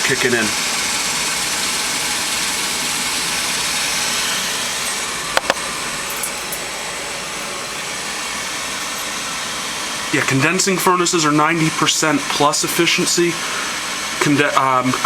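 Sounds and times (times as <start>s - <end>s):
furnace fan whirring: 0.0s - 15.0s
sharp clicks: 5.4s - 5.7s.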